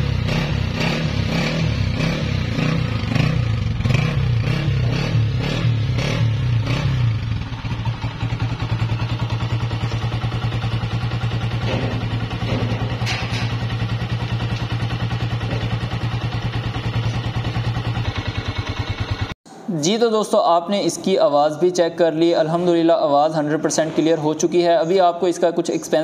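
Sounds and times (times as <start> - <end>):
motorcycle engine idling: 0.0 - 19.4.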